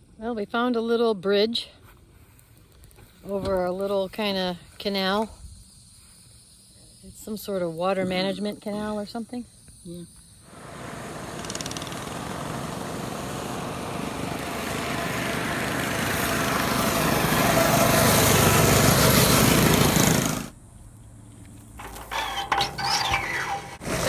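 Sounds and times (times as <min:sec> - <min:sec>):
motor engine running: 0:10.5 - 0:20.6, 0:21.8 - 0:24.0.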